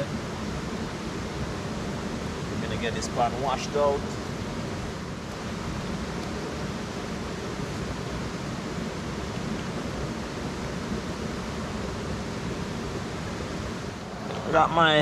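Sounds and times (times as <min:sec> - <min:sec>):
river water rushing: 0:13.8 - 0:15.0.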